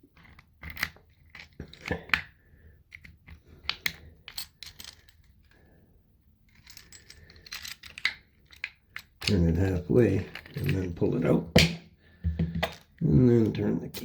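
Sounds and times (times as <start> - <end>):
faint key handling: 6.5 - 11.0.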